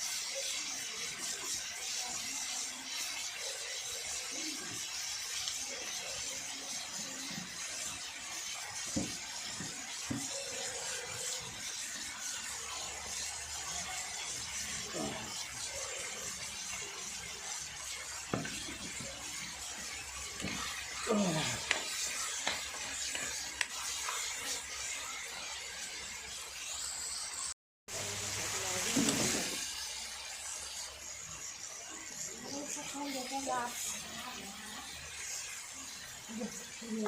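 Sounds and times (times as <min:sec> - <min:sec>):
food sizzling in a pan: 0:00.0 - 0:37.0
spoon scraping a pan: 0:06.7 - 0:25.0.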